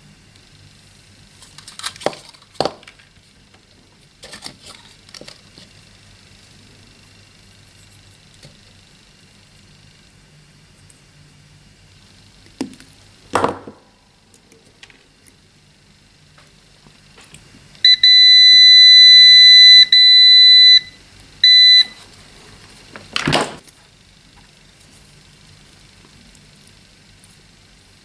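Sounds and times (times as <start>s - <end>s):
multimeter continuity beep: 17.8s - 22.0s.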